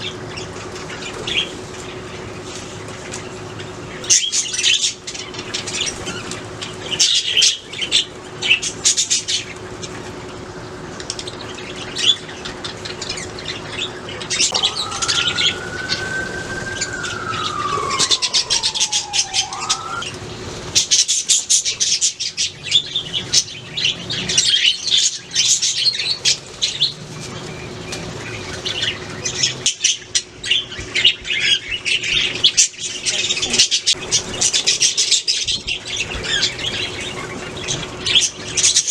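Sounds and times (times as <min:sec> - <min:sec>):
long gliding whistle: 0:14.5 - 0:20.1.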